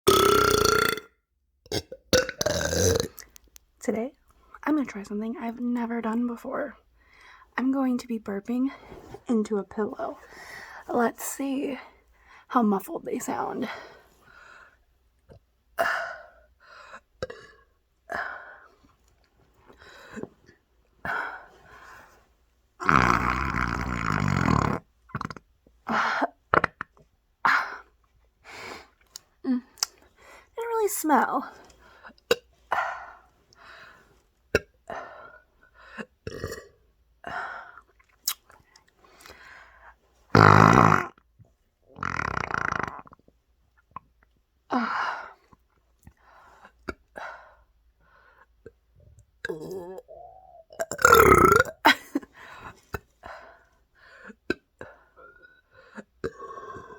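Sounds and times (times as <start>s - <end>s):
woman burping into a pillow: 0.1s - 1.1s, 1.7s - 3.2s, 22.8s - 25.4s, 36.2s - 36.8s, 40.4s - 41.2s, 49.4s - 52.2s.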